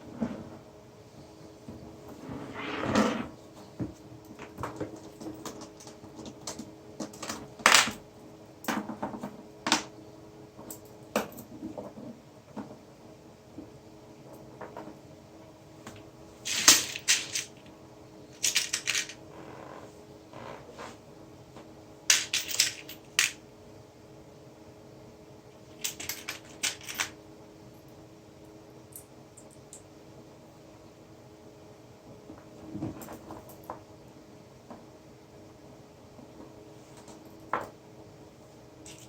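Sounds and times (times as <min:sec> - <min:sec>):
faint steady hum: 0:00.0 - 0:39.0
metal parts and tools clinking: 0:16.5 - 0:17.6, 0:18.4 - 0:19.2, 0:22.1 - 0:23.4.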